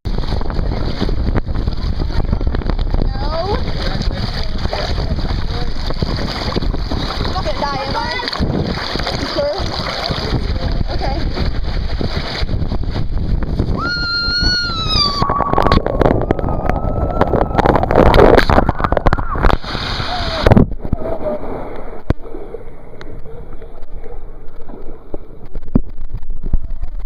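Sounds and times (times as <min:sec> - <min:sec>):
rushing splashing water: 0:00.1 - 0:27.0
water sloshing: 0:01.6 - 0:12.8, 0:13.5 - 0:27.0
loud splash: 0:03.4 - 0:22.6
person screaming: 0:13.8 - 0:18.0.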